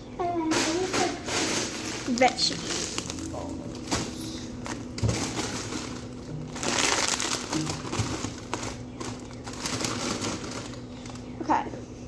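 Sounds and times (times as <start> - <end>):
plastic packaging crinkling: 0.5 - 11.3.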